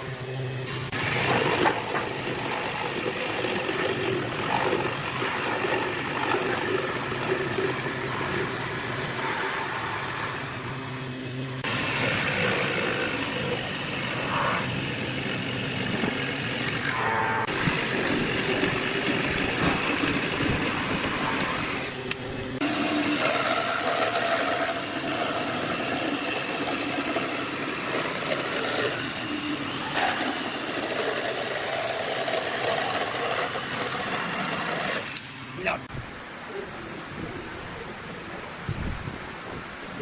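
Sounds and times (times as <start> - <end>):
electric woodworking tool running: 0.0 - 35.6.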